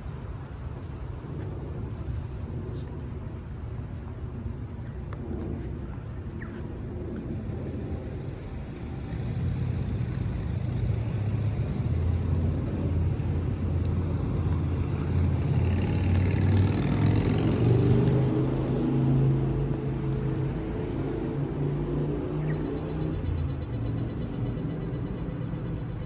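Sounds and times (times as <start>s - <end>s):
street traffic: 0.0s - 26.0s
vehicle engine: 0.0s - 26.0s.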